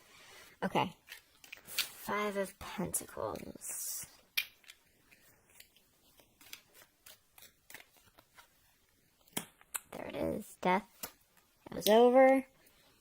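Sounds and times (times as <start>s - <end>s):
cards clicking and snapping: 4.3s - 8.5s.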